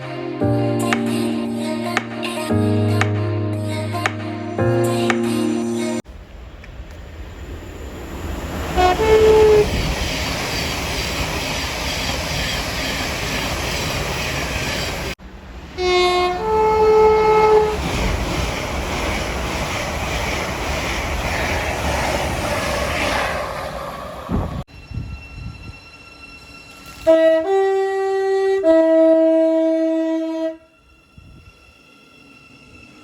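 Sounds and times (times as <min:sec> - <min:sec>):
train rumbling on the line: 0:05.2 - 0:33.0
two-tone train horn: 0:08.6 - 0:09.9, 0:15.8 - 0:17.8, 0:26.8 - 0:31.4.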